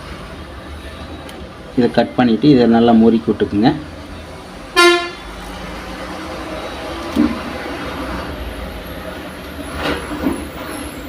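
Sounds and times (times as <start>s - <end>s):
road traffic rumble: 0.0s - 11.0s
vehicle horn toot: 4.7s - 5.2s.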